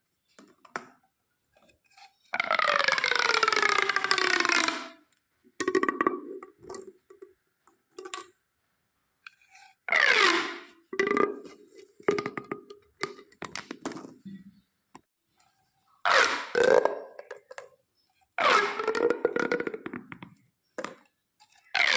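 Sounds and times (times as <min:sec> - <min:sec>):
plastic pop tubes popping: 0:02.4 - 0:05.0, 0:05.6 - 0:07.4, 0:10.0 - 0:14.3, 0:16.1 - 0:17.8, 0:18.4 - 0:21.1.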